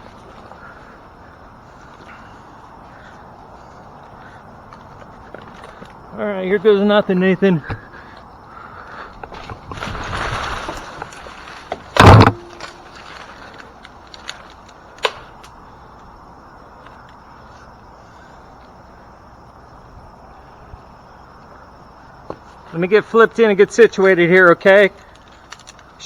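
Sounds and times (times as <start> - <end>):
branches and leaves rustling: 0.0 - 26.0
tree limb crashing down: 9.3 - 15.3.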